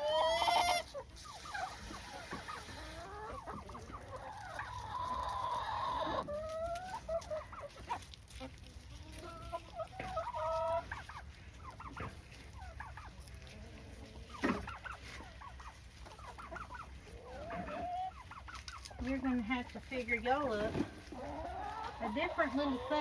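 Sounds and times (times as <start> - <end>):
hens clucking: 0.0 - 23.0.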